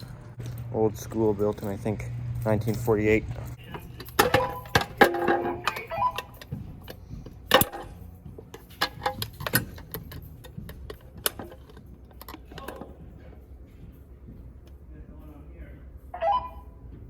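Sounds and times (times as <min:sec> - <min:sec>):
sharp clicks and clinks: 0:00.0 - 0:13.4
steady low hum: 0:00.0 - 0:17.0.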